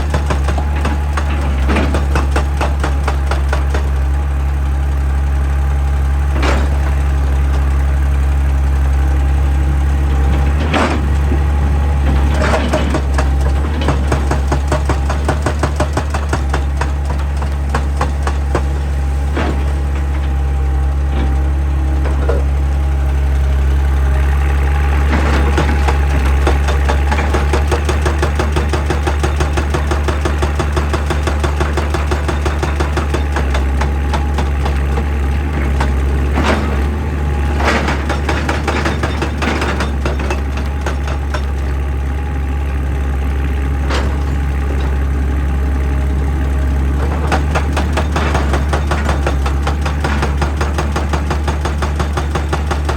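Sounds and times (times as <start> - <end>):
loud metal clanks: 0.0 - 4.0, 9.9 - 22.7, 25.0 - 41.9, 47.0 - 52.9
excavator diesel engine running: 0.0 - 52.9
hydraulic rock breaker hammering: 0.0 - 52.9.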